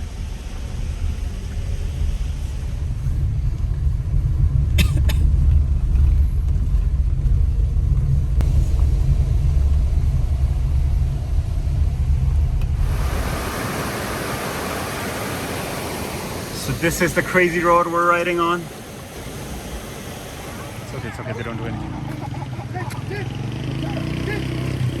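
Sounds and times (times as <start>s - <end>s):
car driving on rough road: 0.0s - 25.0s
fast-flowing river rushing: 12.8s - 21.5s.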